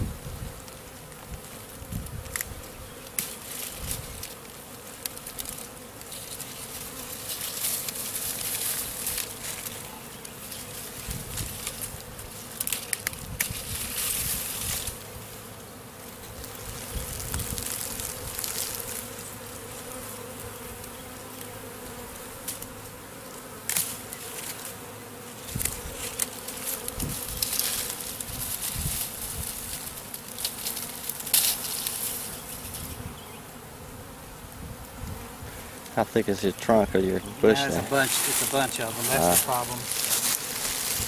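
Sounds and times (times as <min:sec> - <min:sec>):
honeybee swarm humming: 0:00.0 - 0:41.0
scrapes and rustles in bush: 0:00.4 - 0:21.1, 0:23.7 - 0:33.3, 0:37.0 - 0:41.0.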